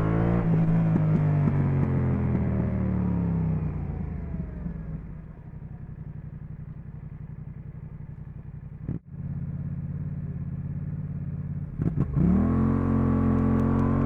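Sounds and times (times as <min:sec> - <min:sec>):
motorcycle engine idling: 0:01.6 - 0:11.8.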